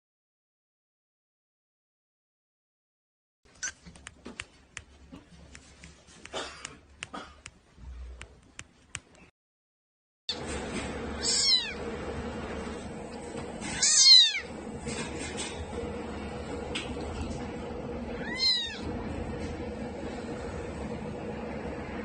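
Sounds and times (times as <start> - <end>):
low hum: 10.3 - 22.0
kitten meowing: 11.2 - 11.8, 13.8 - 14.5, 18.2 - 18.8.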